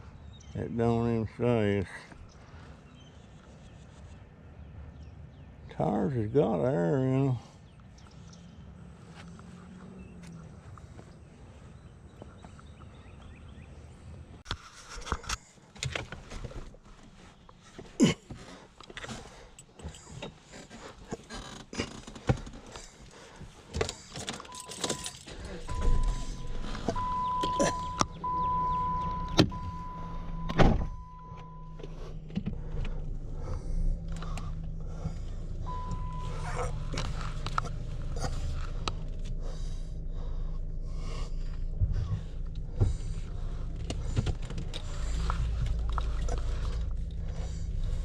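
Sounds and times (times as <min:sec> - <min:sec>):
low steady hum: 0:24.3 - 0:48.0
car warning tone: 0:24.4 - 0:32.3, 0:34.0 - 0:39.2
low rumble: 0:25.3 - 0:48.0.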